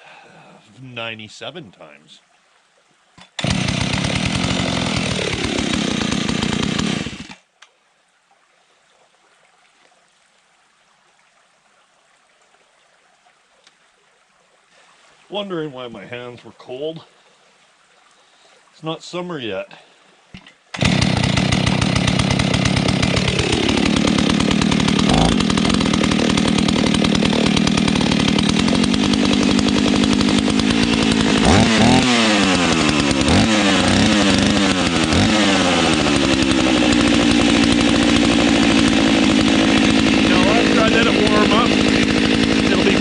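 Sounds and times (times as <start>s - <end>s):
chainsaw idling and revving: 3.3s - 7.5s, 20.8s - 43.0s.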